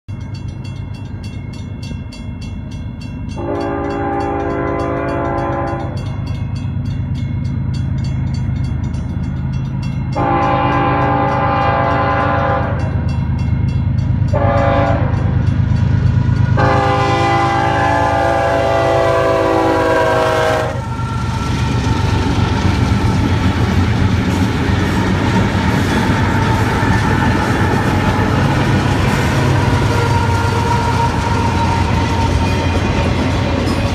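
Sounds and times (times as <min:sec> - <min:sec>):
train rolling past: 0:00.1 - 0:33.9
locomotive air horn blasts: 0:03.4 - 0:06.0, 0:10.2 - 0:13.0, 0:14.3 - 0:15.4, 0:16.4 - 0:21.1
diesel engines droning: 0:03.4 - 0:33.9.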